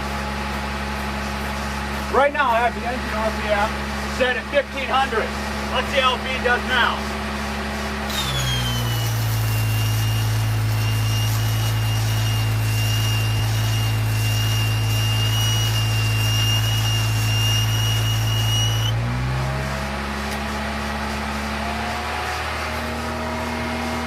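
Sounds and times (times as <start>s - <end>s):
engine running under load: 0.0s - 24.0s
high-pitched welder whine: 0.0s - 24.0s.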